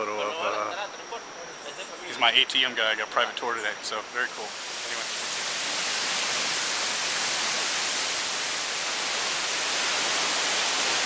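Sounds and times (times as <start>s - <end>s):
waterfall rushing: 3.8s - 11.0s.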